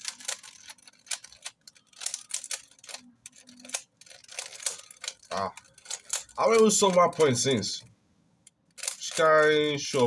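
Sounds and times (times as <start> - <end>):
puzzle cube clicking: 8.7 - 10.0.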